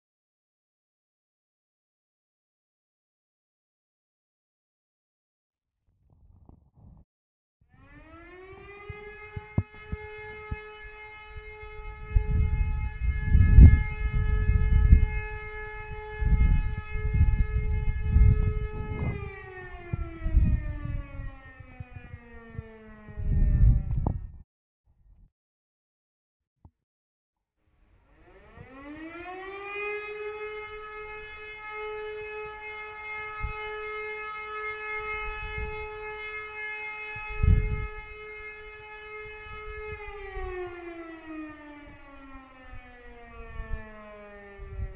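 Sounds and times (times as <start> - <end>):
wind buffeting microphone: 6.1 - 7.0, 8.5 - 24.4, 33.2 - 36.2, 37.0 - 44.9
civil defence siren wailing: 7.7 - 24.4, 27.8 - 44.9.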